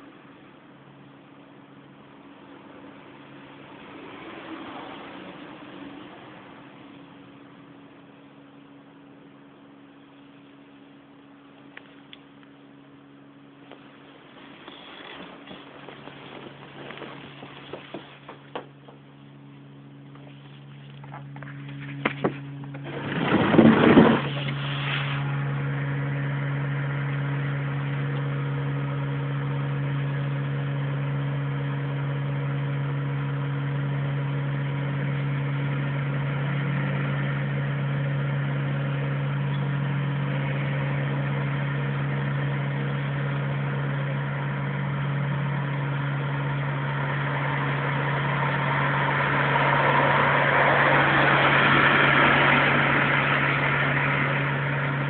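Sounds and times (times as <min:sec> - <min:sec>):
heavy buzzing hum: 0:00.0 - 0:55.0
short burst of noise: 0:22.8 - 0:25.6
rushing noise: 0:47.6 - 0:55.0.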